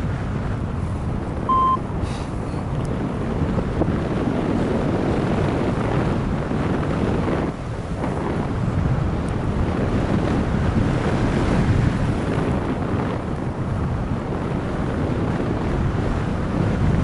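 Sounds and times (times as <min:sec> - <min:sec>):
wind buffeting microphone: 0:00.0 - 0:17.0
short high electronic beep: 0:01.5 - 0:01.8.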